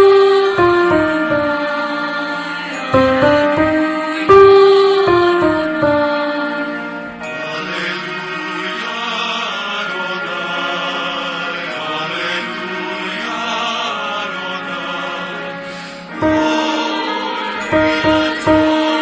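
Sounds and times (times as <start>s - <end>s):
choir singing held chords: 0.0s - 19.0s.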